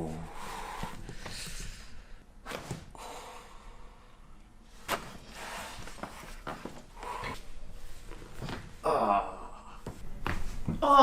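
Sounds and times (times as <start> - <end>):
breathy exhales: 2.9 - 4.4.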